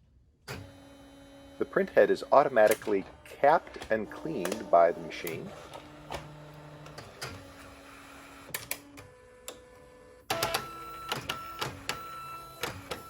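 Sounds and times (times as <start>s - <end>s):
printer motor whirring: 0.5s - 13.0s
printer mechanism clicks: 2.2s - 7.6s, 10.3s - 13.0s.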